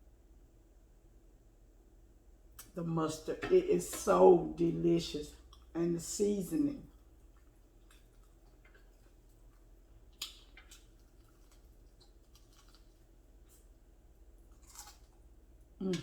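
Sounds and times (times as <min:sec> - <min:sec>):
faint chewing clicks: 0:05.4 - 0:05.8, 0:06.9 - 0:16.0.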